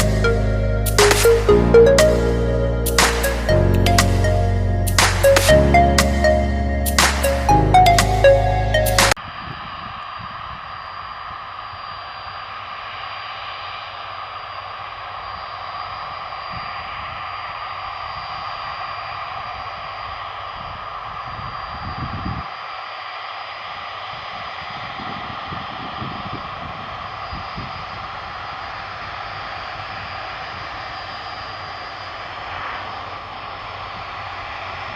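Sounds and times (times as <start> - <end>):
high engine whine: 0.0 - 34.9
jet engines running: 0.0 - 34.9.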